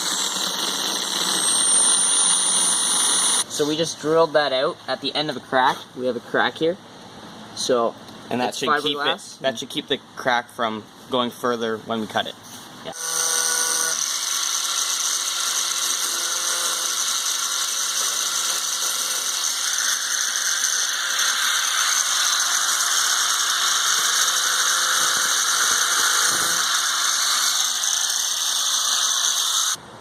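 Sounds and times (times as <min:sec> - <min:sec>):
grinder cutting metal: 0:00.0 - 0:03.6, 0:12.9 - 0:29.8.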